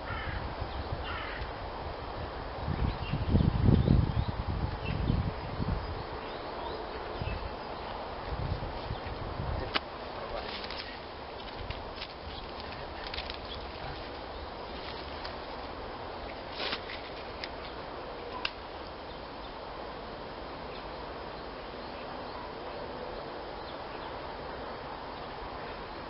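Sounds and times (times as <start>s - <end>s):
outdoor noise: 0.0s - 26.0s.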